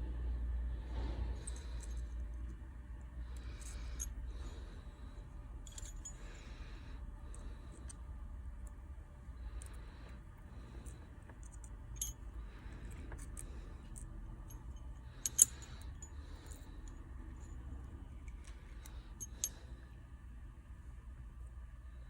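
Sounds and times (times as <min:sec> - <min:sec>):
low steady hum: 0:00.0 - 0:22.0
small tools clicking and tapping: 0:12.9 - 0:17.0.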